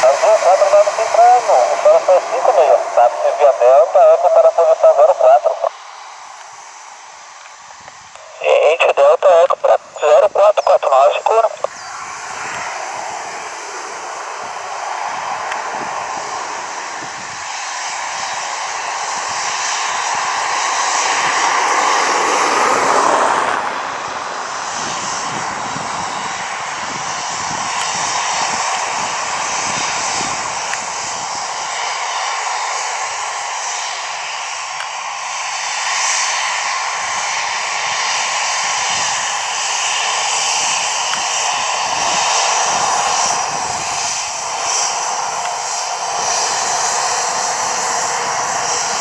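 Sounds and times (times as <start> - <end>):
airliner engines passing: 0.0 - 49.0.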